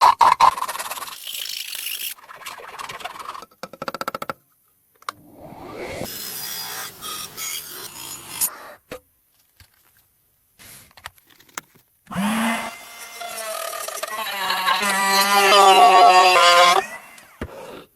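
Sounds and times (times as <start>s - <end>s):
filing or sanding scrapes: 6.0s - 8.5s.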